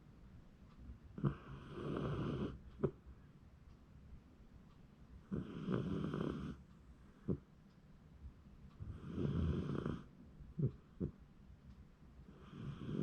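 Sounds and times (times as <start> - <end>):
dog snoring: 1.2 - 2.6, 5.3 - 6.6, 8.8 - 11.1, 12.3 - 13.0.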